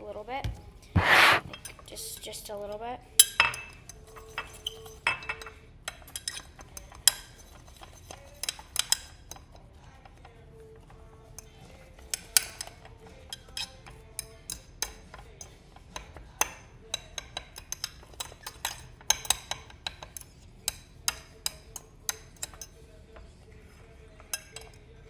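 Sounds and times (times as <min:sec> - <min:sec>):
soft mixture being stirred: 0:01.0 - 0:01.5, 0:05.8 - 0:25.0
utensil clinking against bowl: 0:03.2 - 0:09.5, 0:12.0 - 0:23.3, 0:24.1 - 0:24.8.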